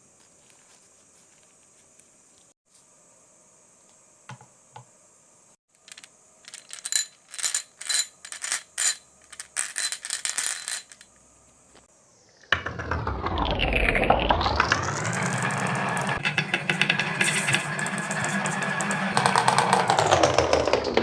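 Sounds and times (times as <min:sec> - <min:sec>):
marbles clattering down a track: 0:05.9 - 0:11.1, 0:12.4 - 0:21.0.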